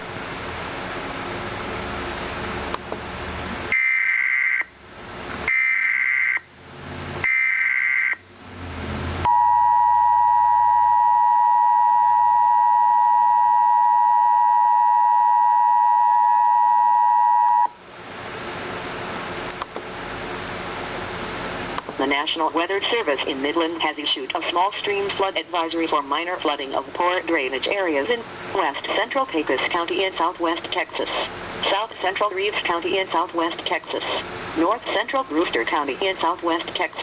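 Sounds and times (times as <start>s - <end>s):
two-tone attention signal: 9.3s - 17.8s
radio hiss: 22.0s - 37.0s.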